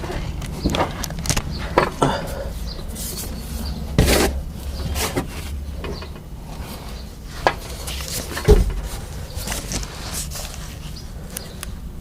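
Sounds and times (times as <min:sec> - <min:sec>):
handling knocks and rubbing: 0:02.7 - 0:11.0.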